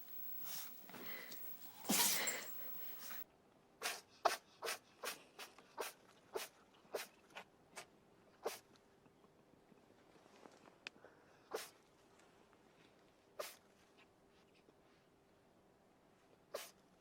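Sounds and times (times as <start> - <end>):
pet animal sneezing: 0.0 - 3.2, 3.8 - 7.1, 7.8 - 8.6, 11.5 - 11.7, 13.4 - 13.6, 16.5 - 16.8.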